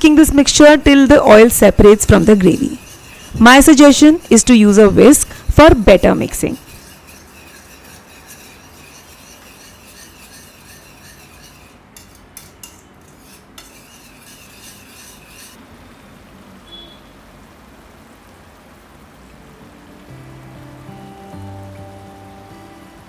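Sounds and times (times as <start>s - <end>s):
whisk knocking against pan: 0.0s - 15.5s
whisk stirring thick sauce: 0.0s - 15.6s
soft sizzle: 0.0s - 23.0s.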